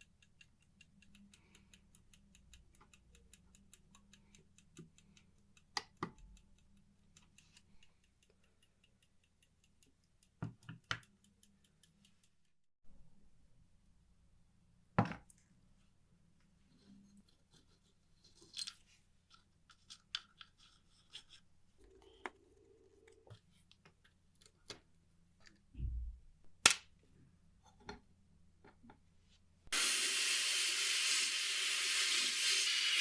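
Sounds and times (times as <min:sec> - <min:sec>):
small clicks and taps: 0:00.0 - 0:12.6
loud hiss of air spray: 0:29.7 - 0:33.0.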